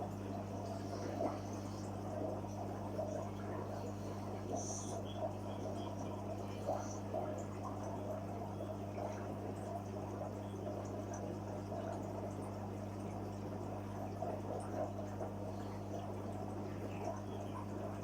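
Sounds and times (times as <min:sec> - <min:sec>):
pump humming: 0:00.0 - 0:18.0
water bubbling and trickling: 0:00.0 - 0:18.0.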